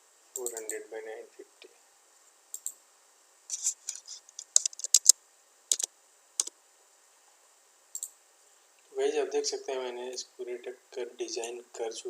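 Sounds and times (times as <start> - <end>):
keyboard and mouse clicking: 0.4 - 0.8, 2.5 - 2.8, 3.5 - 5.1, 5.7 - 6.5.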